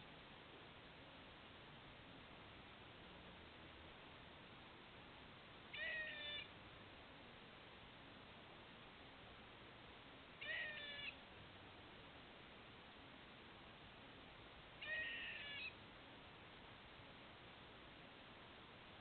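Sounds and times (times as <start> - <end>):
squirrel calling: 5.7 - 6.6, 10.4 - 11.2, 14.8 - 15.8.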